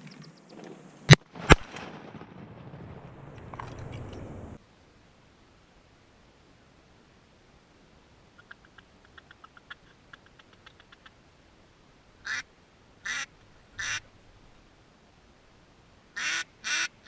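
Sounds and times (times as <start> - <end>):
duck quacks: 12.2 - 12.4, 13.0 - 14.0, 16.2 - 17.0.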